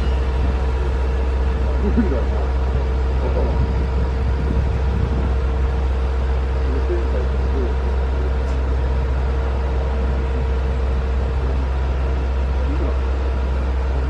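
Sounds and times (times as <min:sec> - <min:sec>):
faint voices: 0:00.0 - 0:05.3
heavy machine engine droning: 0:00.0 - 0:14.0.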